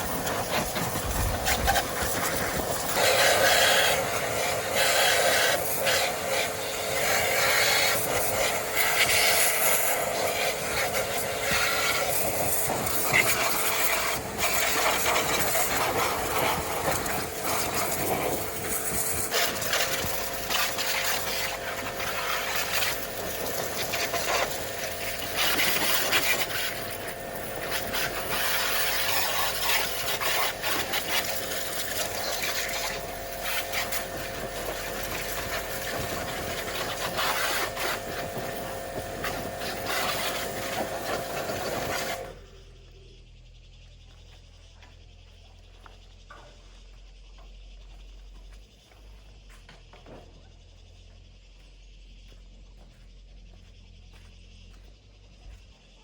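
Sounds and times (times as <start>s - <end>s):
loud hissing rasping noise: 0.0s - 42.6s
machine humming: 0.0s - 44.8s.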